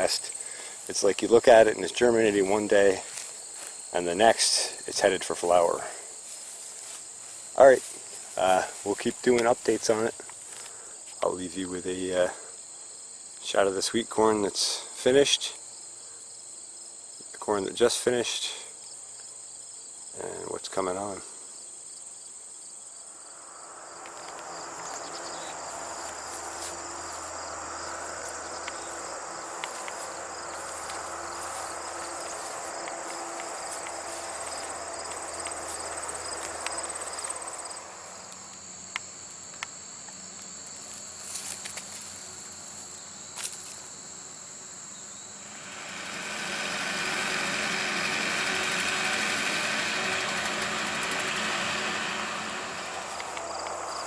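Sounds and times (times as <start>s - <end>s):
insects chirping: 0.0s - 54.0s
broad rushing noise: 23.3s - 38.0s, 45.3s - 54.0s.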